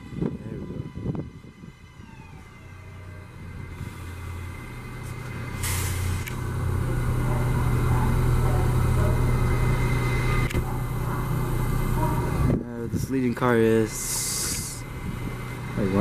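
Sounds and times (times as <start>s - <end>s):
subway train pulling out: 0.0s - 16.0s
brief hiss: 5.6s - 6.4s.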